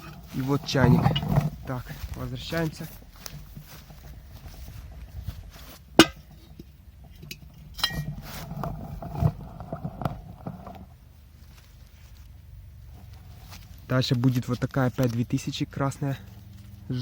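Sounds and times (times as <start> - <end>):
metal kettle clinking and knocking: 6.0 - 8.2.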